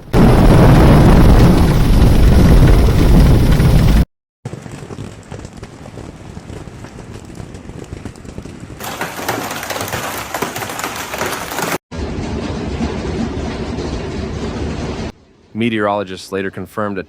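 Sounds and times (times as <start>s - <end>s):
hail pelting surfaces: 0.2s - 11.8s.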